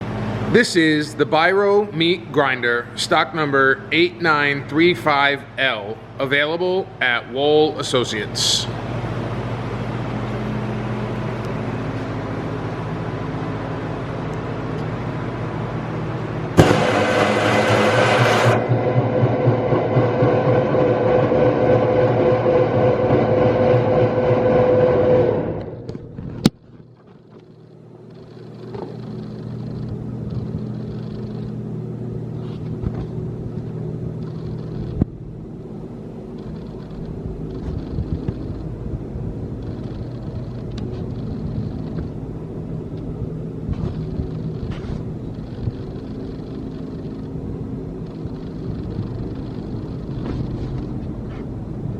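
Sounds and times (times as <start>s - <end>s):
low machine hum: 0.0s - 51.9s
electric motor humming: 16.4s - 26.2s.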